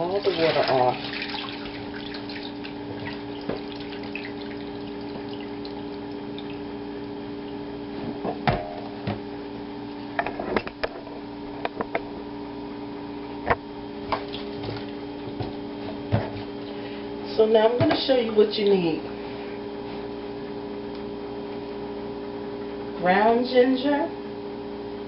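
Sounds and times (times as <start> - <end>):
tap running into sink: 3.0 - 3.8.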